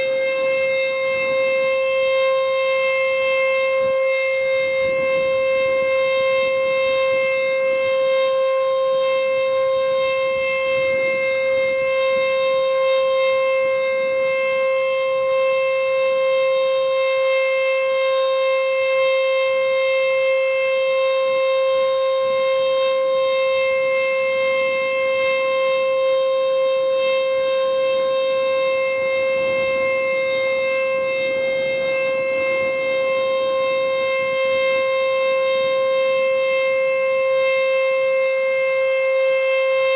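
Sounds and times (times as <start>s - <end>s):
tornado siren steady tone: 0.0s - 39.9s.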